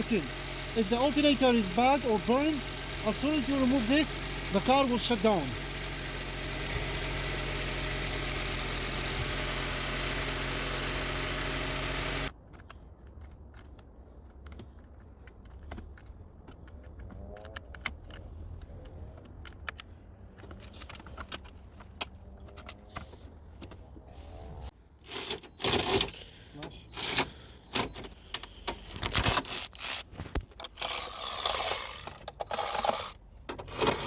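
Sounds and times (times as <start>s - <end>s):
car engine running: 0.0s - 12.3s.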